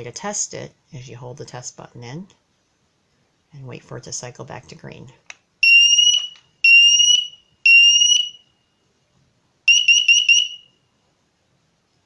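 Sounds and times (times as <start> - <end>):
quick alarm beeps: 5.6 - 8.5, 9.7 - 10.7
smoke alarm high-pitched beeps: 5.6 - 8.6, 9.7 - 10.8.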